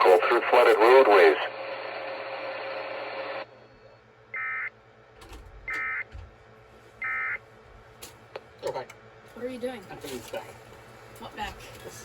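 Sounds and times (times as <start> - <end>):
radio hiss: 0.0 - 3.5.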